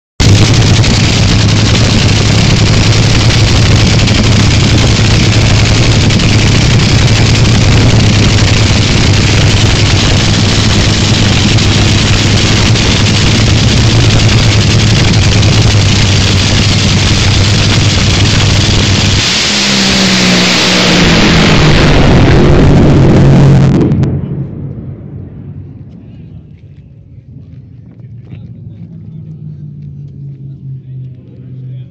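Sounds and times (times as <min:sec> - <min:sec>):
dragster engine idling: 0:00.2 - 0:24.2
low rumble: 0:00.2 - 0:31.9.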